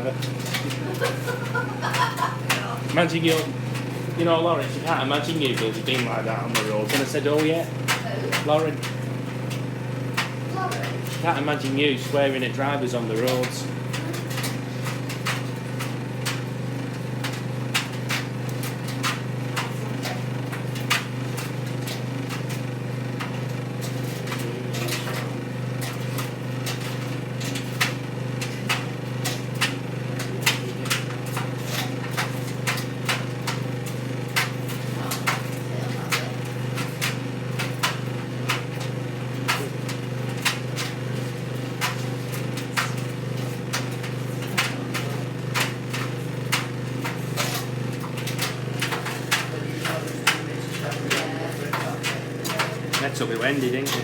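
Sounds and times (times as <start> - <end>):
tumble dryer motor hum: 0.0 - 54.0.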